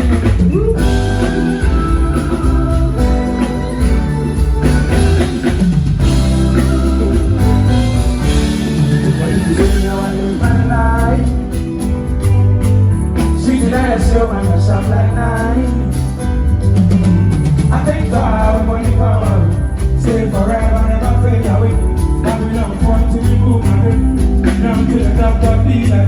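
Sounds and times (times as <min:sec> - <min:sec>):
drums: 0:00.0 - 0:26.0
heavy bass: 0:00.0 - 0:26.0
sustained chords: 0:00.8 - 0:11.4.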